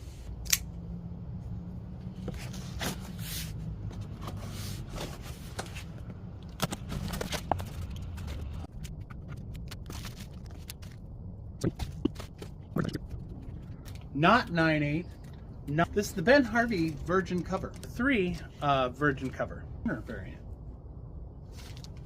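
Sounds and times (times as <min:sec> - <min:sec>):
low steady hum: 0:00.0 - 0:22.0
cardboard and packing rustling: 0:02.2 - 0:11.0.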